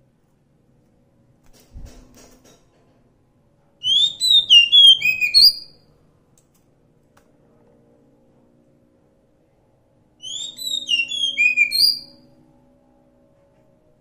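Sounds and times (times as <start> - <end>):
bird singing whistled notes: 3.8 - 5.8, 10.2 - 12.3.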